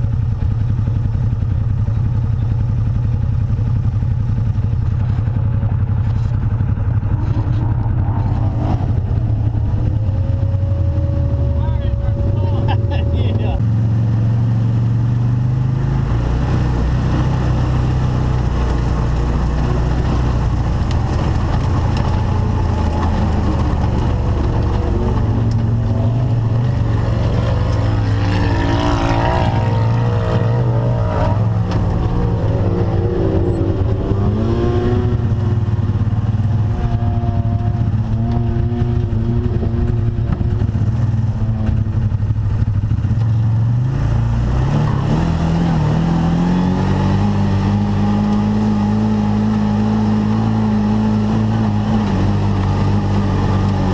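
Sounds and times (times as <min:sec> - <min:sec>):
utility vehicle engine running: 0:00.0 - 0:53.9.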